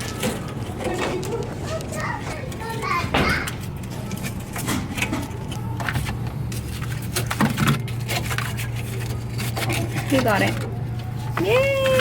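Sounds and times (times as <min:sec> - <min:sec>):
knocks and clatter of metal parts: 0:00.0 - 0:06.1
steady low hum: 0:00.0 - 0:12.0.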